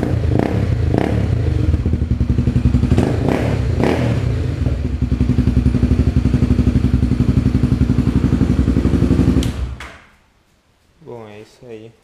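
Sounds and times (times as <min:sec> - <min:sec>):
motorcycle engine idling: 0:00.1 - 0:09.6.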